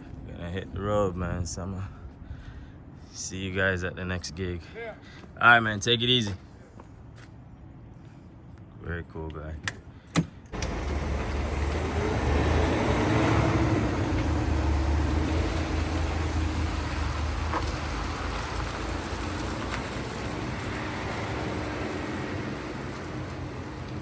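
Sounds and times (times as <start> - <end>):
road noise: 0.0 - 24.0
truck engine pulling away: 10.6 - 24.0.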